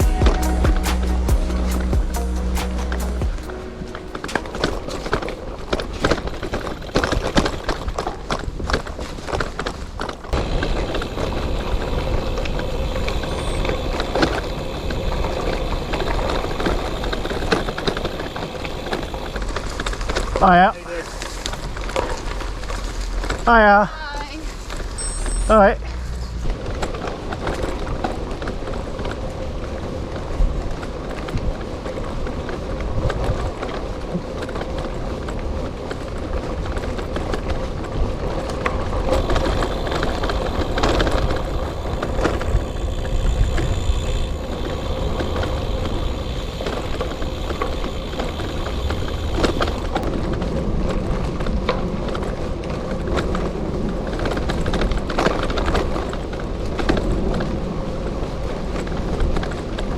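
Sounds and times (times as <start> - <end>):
faint high tone: 0.0 - 5.7
bike tyres crunching on gravel: 0.0 - 59.9
bike frame rattle: 4.2 - 29.4, 30.1 - 57.6.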